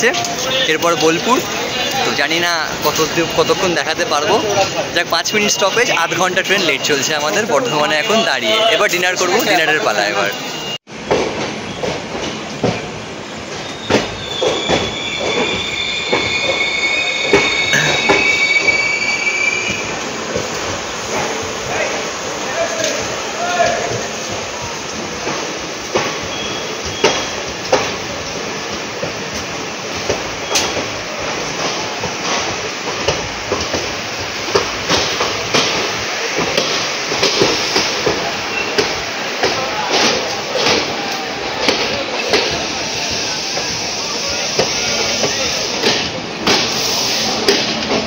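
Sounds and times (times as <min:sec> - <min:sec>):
train rumbling and knocking on rails: 0:00.0 - 0:48.0
train wheel squeal: 0:13.5 - 0:20.1, 0:26.2 - 0:27.5.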